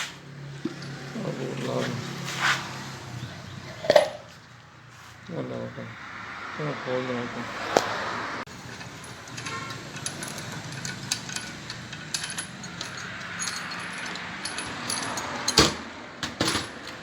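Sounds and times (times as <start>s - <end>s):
hand tools clinking on metal: 8.6s - 17.0s.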